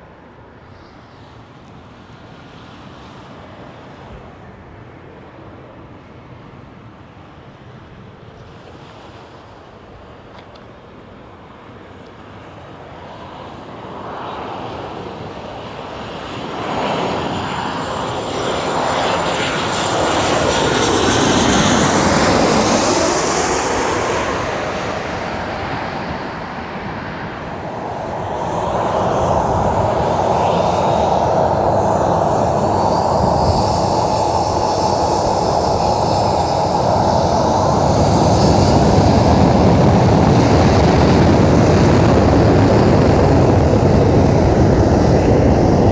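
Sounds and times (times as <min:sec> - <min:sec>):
jet airliner passing overhead: 0:11.2 - 0:45.9.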